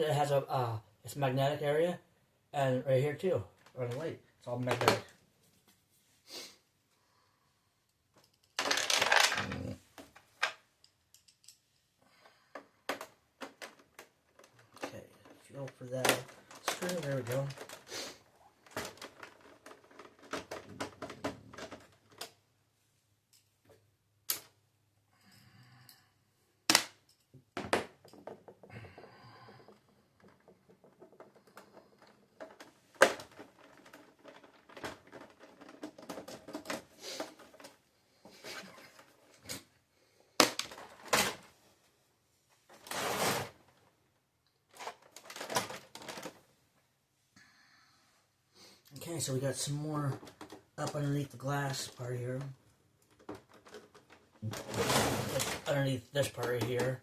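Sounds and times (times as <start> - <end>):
plastic parts clicking and knocking: 3.5 - 5.2, 8.1 - 22.5, 26.6 - 39.7, 40.3 - 41.6, 42.6 - 46.5, 48.9 - 57.0
plastic scraping: 12.6 - 22.4, 27.7 - 39.7, 42.7 - 43.8, 44.7 - 46.5, 49.1 - 57.0.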